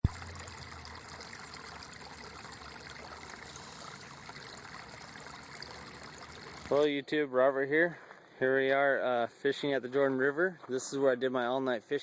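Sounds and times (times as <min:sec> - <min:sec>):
river water trickling: 0:00.0 - 0:06.9.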